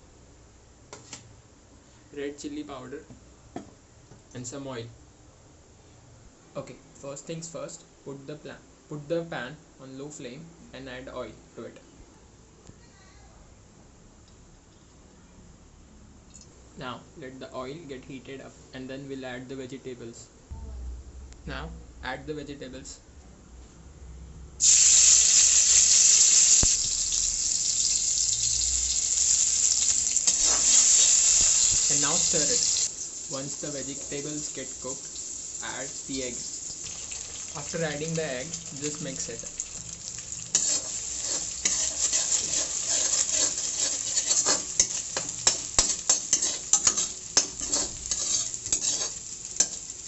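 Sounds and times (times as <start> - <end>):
vegetables sizzling in hot oil: 24.6 - 50.0
utensil scraping a pan: 40.5 - 49.9.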